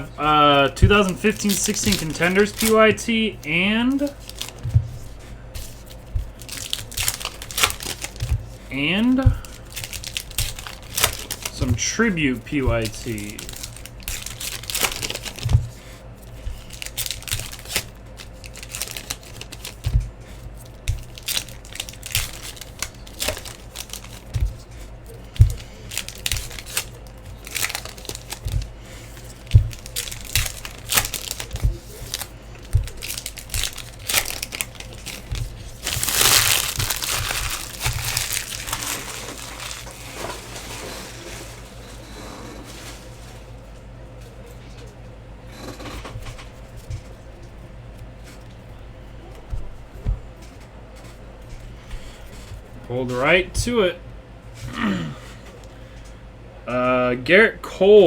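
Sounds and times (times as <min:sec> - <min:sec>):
cards being handled: 0:00.0 - 0:41.0
card wrappers crinkling: 0:00.0 - 0:41.6
foil pack tearing open: 0:00.2 - 0:03.0, 0:03.9 - 0:04.6, 0:05.8 - 0:15.6, 0:16.3 - 0:41.6.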